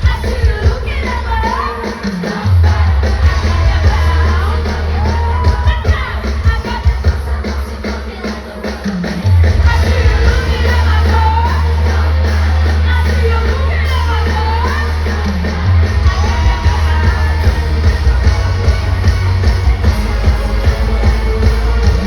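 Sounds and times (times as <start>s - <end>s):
live pop music: 0.0s - 22.0s
person singing: 0.0s - 22.0s
heavy bass line: 2.4s - 7.6s, 9.3s - 22.0s.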